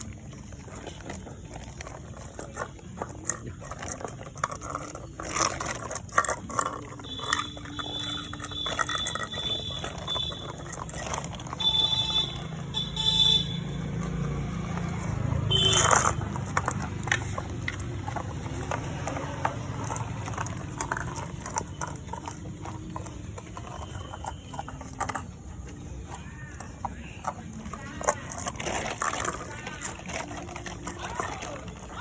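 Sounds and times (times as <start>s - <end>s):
low street rumble: 0.0s - 32.0s.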